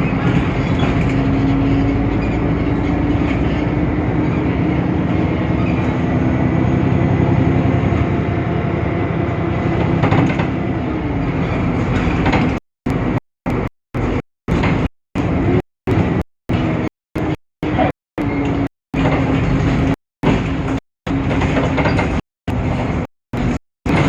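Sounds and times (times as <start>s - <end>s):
bus diesel engine humming: 0.0s - 24.0s
bus rolling and rattling: 0.0s - 24.0s.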